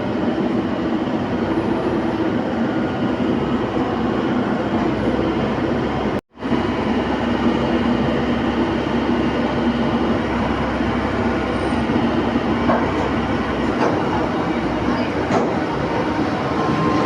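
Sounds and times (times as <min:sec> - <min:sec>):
excavator diesel engine running: 0:00.0 - 0:17.0.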